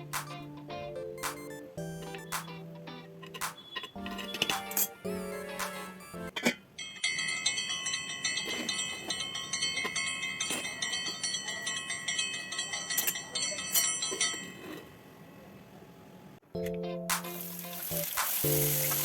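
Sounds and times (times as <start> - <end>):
bell-like ringing: 6.8 - 14.8.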